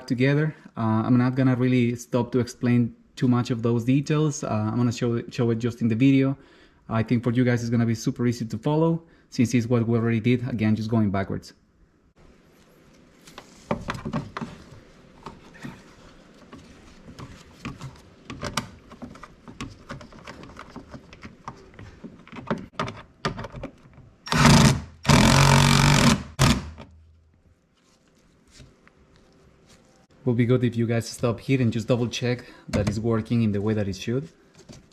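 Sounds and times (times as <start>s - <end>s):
small electric motor running: 24.3s - 26.7s.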